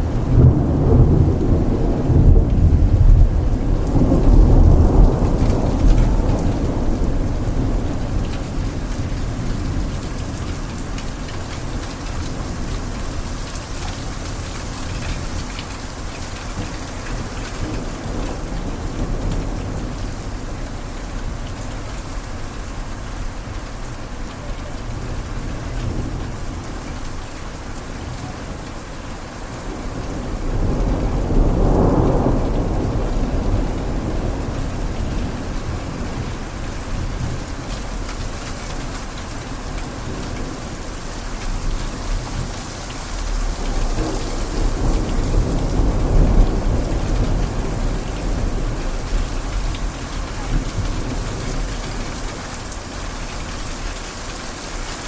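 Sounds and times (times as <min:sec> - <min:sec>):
thunder rolling: 0:00.0 - 0:15.4, 0:27.9 - 0:53.1
rain falling on a surface: 0:00.0 - 0:55.0.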